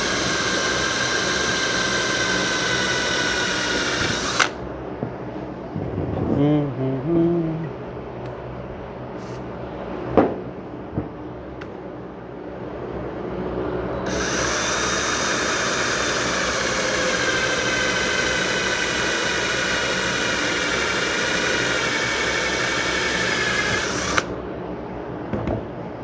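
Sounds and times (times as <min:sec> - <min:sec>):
electric drill whining: 0:00.0 - 0:04.6, 0:14.0 - 0:24.3.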